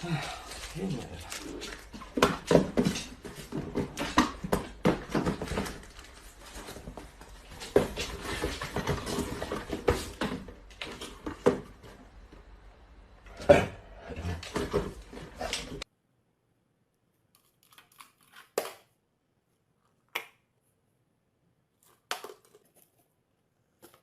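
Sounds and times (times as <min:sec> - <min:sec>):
irregular knocks and clatter: 0:00.5 - 0:12.4.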